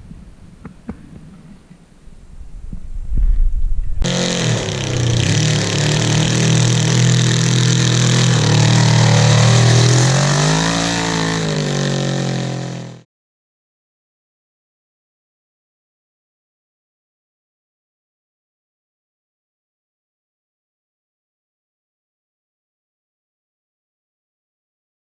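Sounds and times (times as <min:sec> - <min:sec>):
low rumble: 0:01.4 - 0:11.5
motorcycle engine running loudly: 0:04.0 - 0:13.0.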